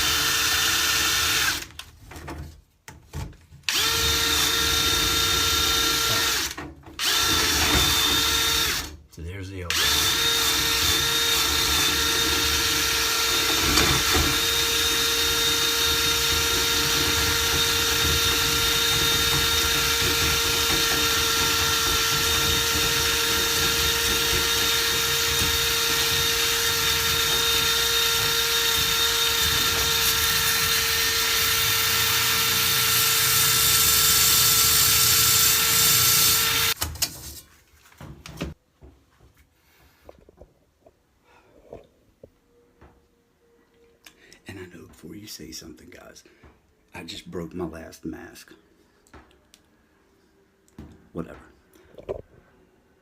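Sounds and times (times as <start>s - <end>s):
power drill motor whine: 0.0s - 1.7s, 3.7s - 8.9s, 9.7s - 36.8s.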